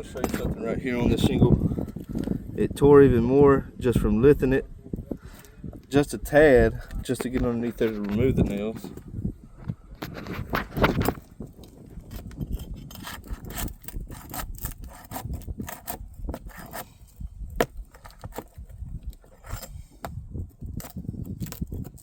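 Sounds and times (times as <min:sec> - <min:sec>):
tool scraping under shingles: 0:05.1 - 0:09.2, 0:10.0 - 0:22.0.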